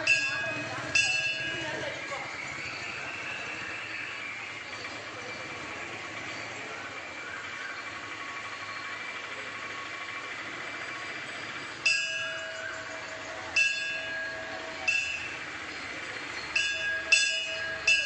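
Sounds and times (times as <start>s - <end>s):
temple bell ringing: 0.0s - 5.6s, 11.8s - 18.0s.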